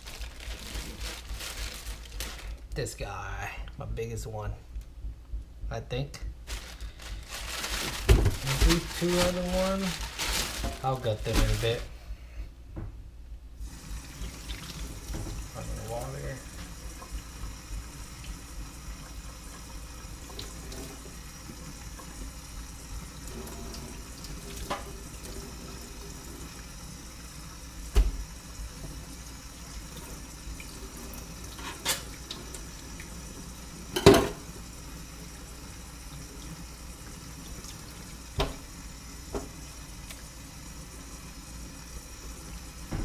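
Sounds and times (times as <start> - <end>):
tap water running into sink: 13.7 - 43.0.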